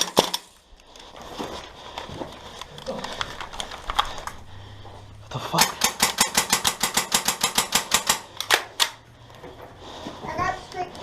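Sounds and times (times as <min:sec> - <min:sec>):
gun clicks: 0:02.6 - 0:04.4, 0:05.6 - 0:09.0
airsoft gun automatic fire: 0:05.6 - 0:09.0.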